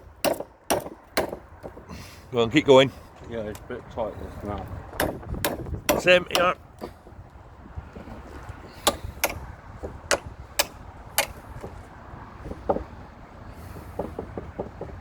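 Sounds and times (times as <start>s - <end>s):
hammer knocking on bolt: 0.2s - 1.8s, 5.0s - 7.2s, 8.8s - 11.8s.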